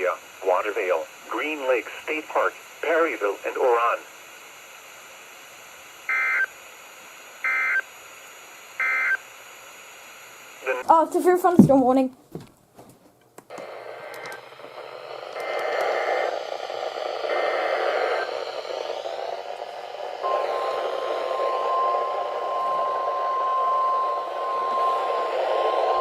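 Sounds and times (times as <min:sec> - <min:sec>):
radio static: 0:00.0 - 0:04.2, 0:10.4 - 0:10.9, 0:13.5 - 0:26.0
steady warning alarm tone: 0:06.0 - 0:06.6, 0:07.4 - 0:07.9, 0:08.7 - 0:09.3, 0:13.9 - 0:26.0
screechy digital data tones: 0:15.9 - 0:26.0.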